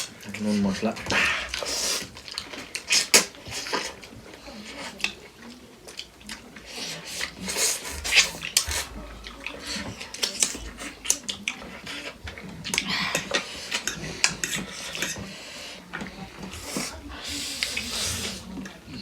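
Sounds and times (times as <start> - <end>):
utensils clinking on plates: 7.4 - 15.4.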